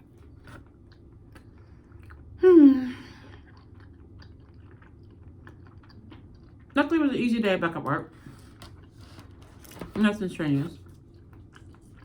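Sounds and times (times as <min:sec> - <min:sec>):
person chewing: 0:00.0 - 0:02.4, 0:03.2 - 0:06.8, 0:10.9 - 0:12.0.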